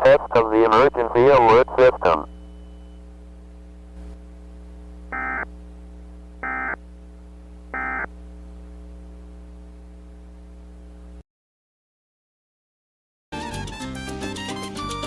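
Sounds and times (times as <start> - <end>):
low electrical hum: 0.0 - 11.2.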